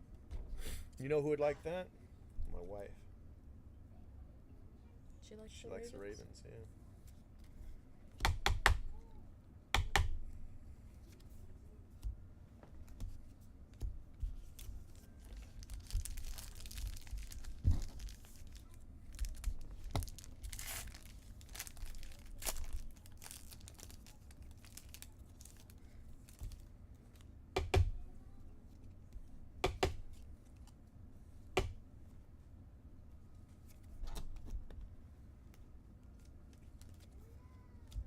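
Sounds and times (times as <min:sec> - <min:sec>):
foil wrappers tearing and crinkling: 0:14.5 - 0:26.7.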